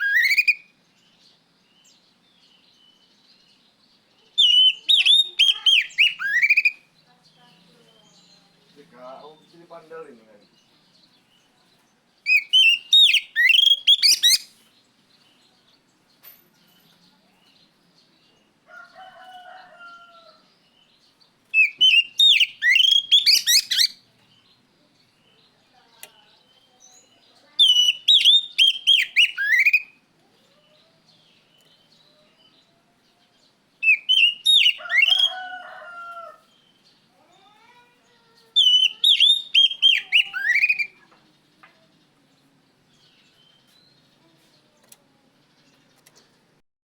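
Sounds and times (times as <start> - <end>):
bird singing whistled phrases: 0.0 - 0.7, 4.4 - 6.9, 12.3 - 14.5, 21.6 - 24.0, 27.6 - 30.0, 33.8 - 35.6, 38.6 - 41.0.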